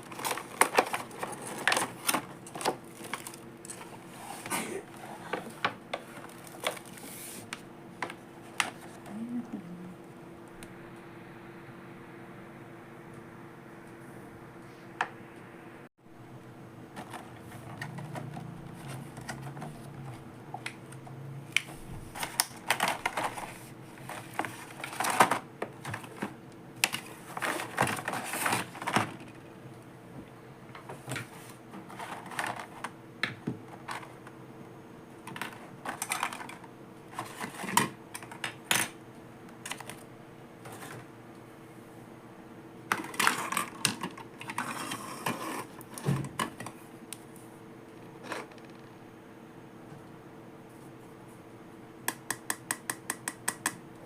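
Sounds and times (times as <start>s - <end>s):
plastic toys clicking and clattering: 0.0s - 4.5s, 22.2s - 29.4s, 31.9s - 32.9s, 33.7s - 34.2s, 35.2s - 39.0s, 42.9s - 45.6s
faint steady hum: 0.0s - 54.0s.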